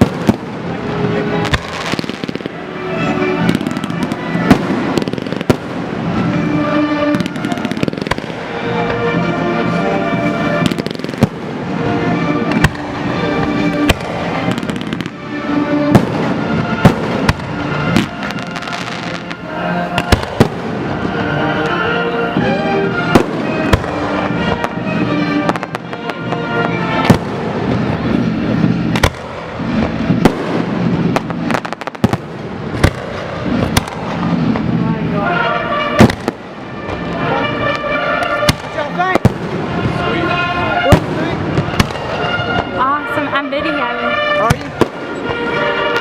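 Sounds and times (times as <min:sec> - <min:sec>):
fireworks bangs and crackle: 0:00.0 - 0:09.1, 0:10.2 - 0:21.4, 0:22.4 - 0:42.9, 0:43.8 - 0:46.0
music playing: 0:00.0 - 0:46.0.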